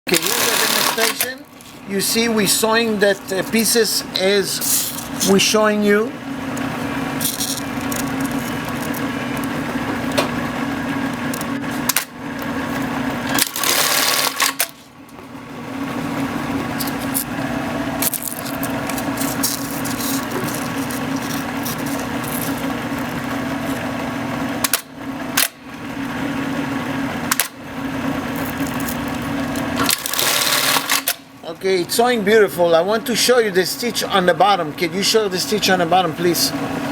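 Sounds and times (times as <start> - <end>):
sewing machine running: 0.1 - 3.4, 6.4 - 14.9, 15.8 - 25.6, 26.3 - 31.2.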